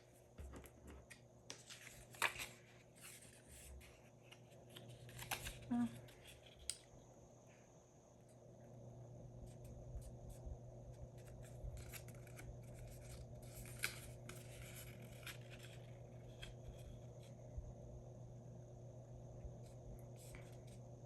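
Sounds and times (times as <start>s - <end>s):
paper folding and creasing: 0.0s - 6.7s, 11.0s - 17.3s
low steady hum: 0.0s - 21.0s.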